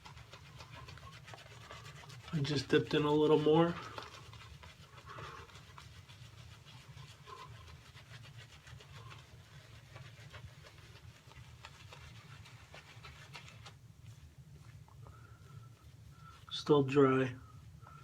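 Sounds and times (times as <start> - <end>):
shaving brush rubbing lather: 0.0 - 14.3.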